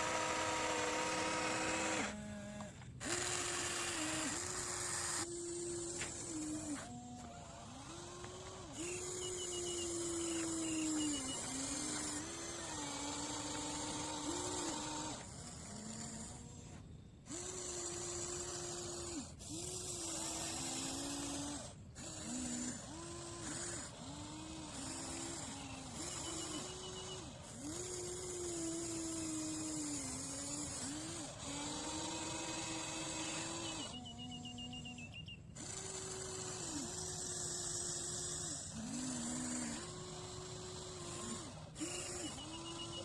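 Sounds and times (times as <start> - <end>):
toy excavator motors whining: 0.0 - 43.0.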